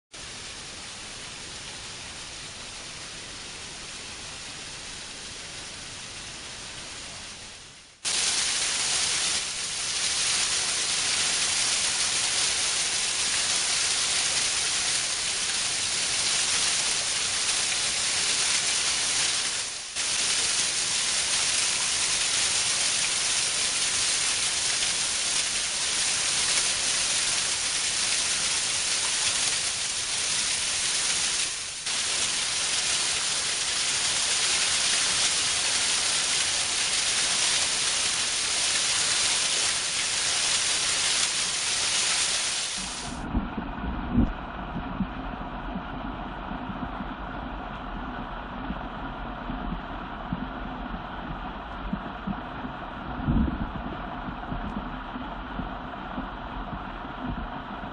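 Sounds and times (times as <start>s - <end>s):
waterfall rushing: 8.1s - 43.2s.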